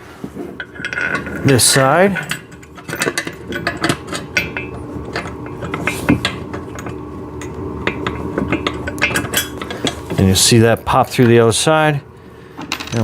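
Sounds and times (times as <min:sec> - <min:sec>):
metal bolt clicking and scraping: 0:00.6 - 0:10.2.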